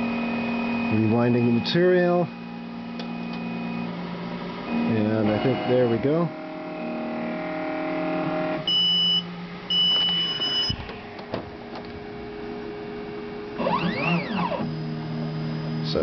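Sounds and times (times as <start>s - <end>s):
printer motor hum: 0.0s - 16.0s
electronic beeps: 8.7s - 10.8s
rising and falling whine: 12.0s - 16.0s.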